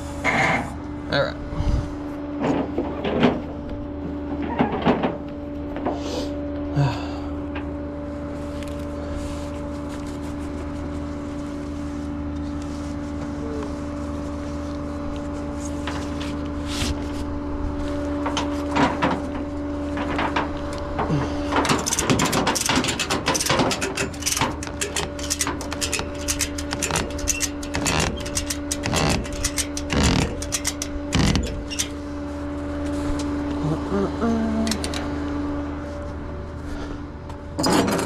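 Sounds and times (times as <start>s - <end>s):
vehicle engine hum and whine: 0.0s - 38.0s
rattling and clanking clicks: 18.2s - 32.1s, 34.7s - 35.1s.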